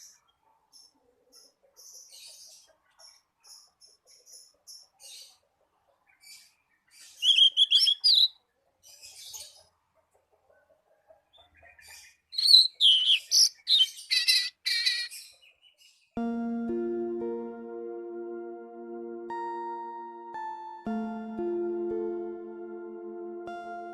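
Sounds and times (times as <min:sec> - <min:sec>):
songbird singing: 0:06.1 - 0:09.6, 0:11.4 - 0:17.6
background music: 0:16.2 - 0:23.9.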